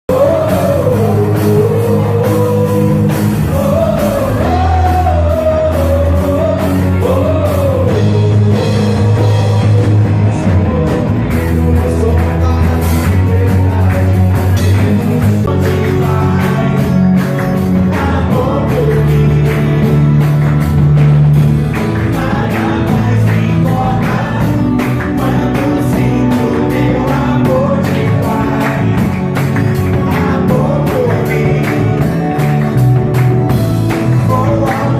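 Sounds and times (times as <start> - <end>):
person singing: 0.1 - 20.8, 21.8 - 34.9
band accompaniment: 0.1 - 34.9.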